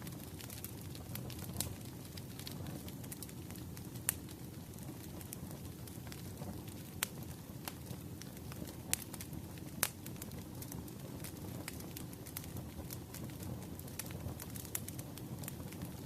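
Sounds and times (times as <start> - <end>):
fire crackles and pops: 0.0 - 16.0
wood fire rumbling: 0.0 - 16.0.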